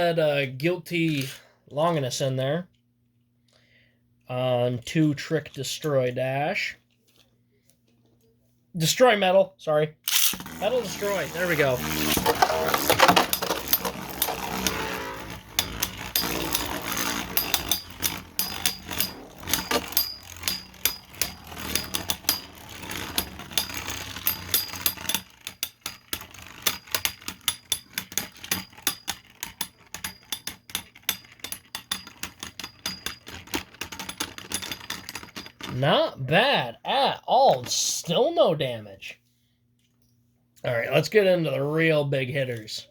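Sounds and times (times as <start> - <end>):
spinning top launch noise: 10.1 - 26.9
spinning tops clicking and clacking: 10.1 - 35.8.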